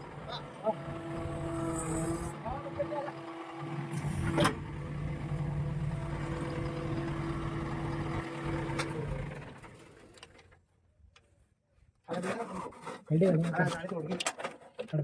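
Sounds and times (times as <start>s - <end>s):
diesel engine running: 0.0s - 10.2s.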